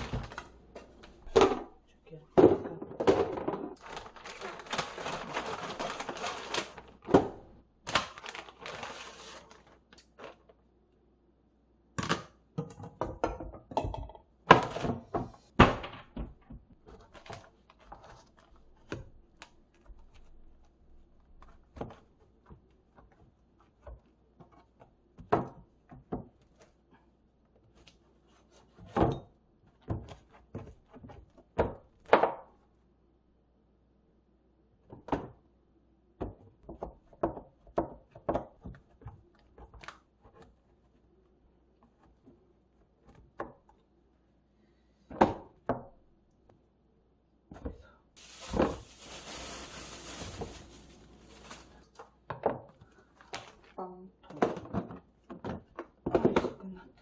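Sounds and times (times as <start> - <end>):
containers knocking and clattering: 0.0 - 4.4
plastic bag rustling: 3.7 - 7.1, 7.9 - 10.5, 48.2 - 52.0.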